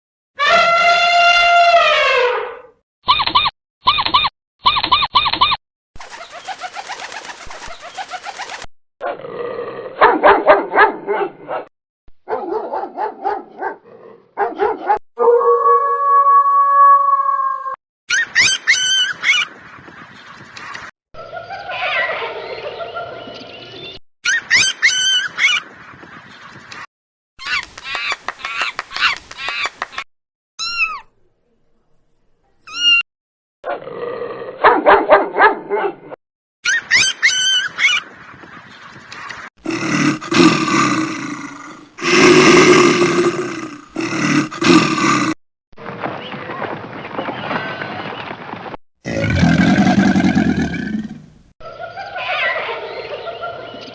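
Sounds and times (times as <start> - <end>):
high chirping animal call: 30.6 - 31.1, 32.6 - 33.0.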